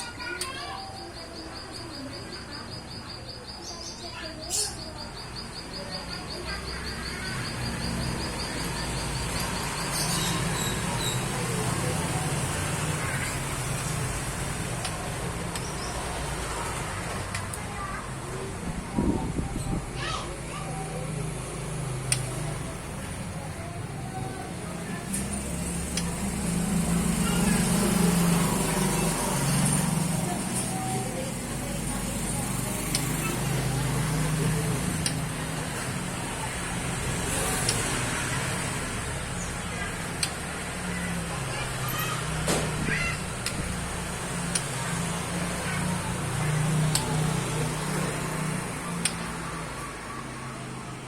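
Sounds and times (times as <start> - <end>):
insect chirping: 0.0 - 11.2
vehicle engine humming: 0.0 - 51.0
bird chirps: 0.1 - 14.0
sharp clicks: 12.3 - 17.7, 21.5 - 23.0, 25.1 - 50.5.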